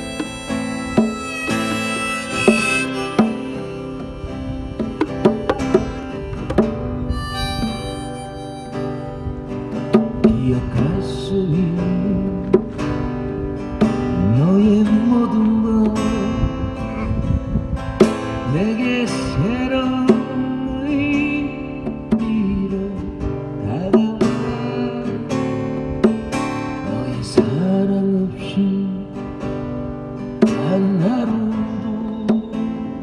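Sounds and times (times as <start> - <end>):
sliding lead melody: 0.0 - 10.8
acoustic guitar strumming: 0.0 - 33.0.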